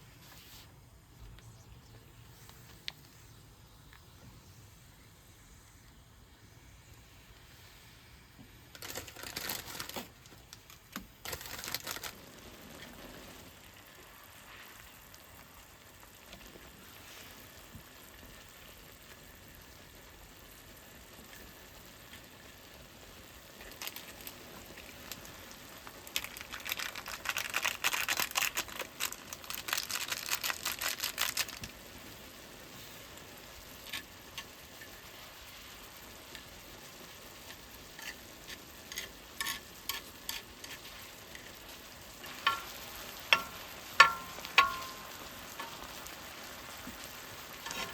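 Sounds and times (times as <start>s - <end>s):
crinkling and rustling: 8.7s - 13.1s, 23.6s - 31.8s, 46.8s - 47.9s.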